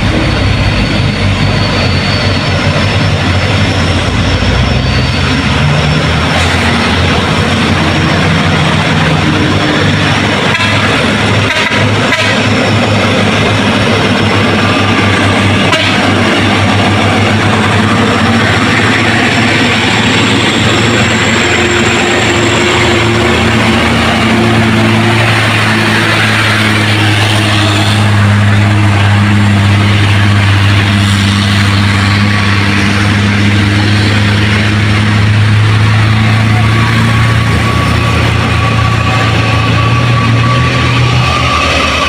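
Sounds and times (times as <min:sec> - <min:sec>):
truck engine running: 0:00.0 - 0:42.0.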